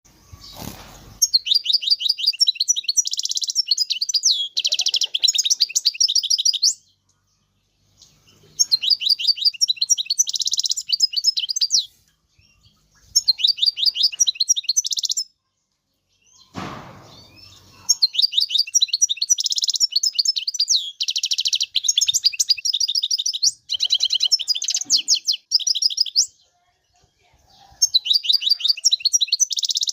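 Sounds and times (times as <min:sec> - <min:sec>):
rustle or thump: 0:00.4 - 0:01.2, 0:16.5 - 0:17.6.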